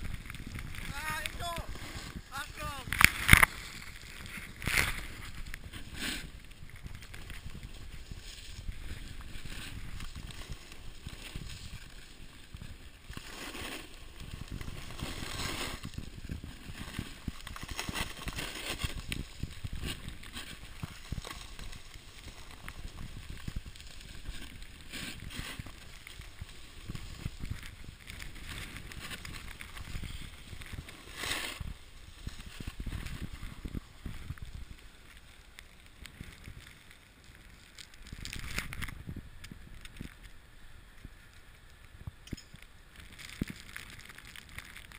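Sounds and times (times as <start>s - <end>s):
snowboard scraping over snow: 0.0s - 38.3s
wind rumbling on microphone: 0.0s - 44.9s.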